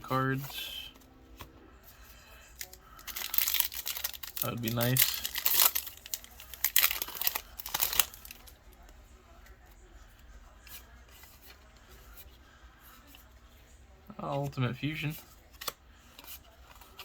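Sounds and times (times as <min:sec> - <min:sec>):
foil wrapper crinkling and tearing: 0:02.4 - 0:08.5.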